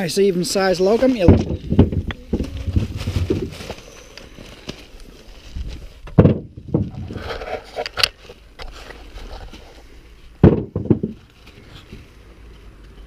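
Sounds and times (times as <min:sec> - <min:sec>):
logs scraping and clattering: 0:00.6 - 0:12.7
heavy knocks of wood: 0:01.2 - 0:03.5, 0:06.0 - 0:07.2, 0:10.4 - 0:11.3.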